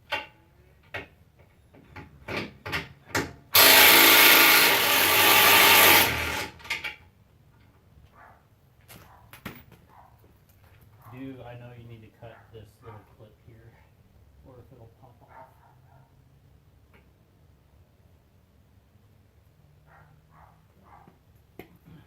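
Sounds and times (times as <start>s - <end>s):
power tool spinning out a bolt: 3.6s - 6.9s.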